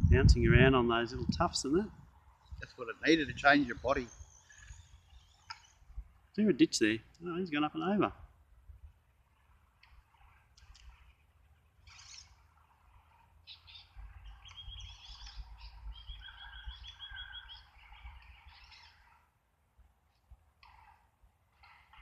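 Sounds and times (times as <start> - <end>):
birds chirping and trilling: 1.5 - 6.4, 9.2 - 19.4.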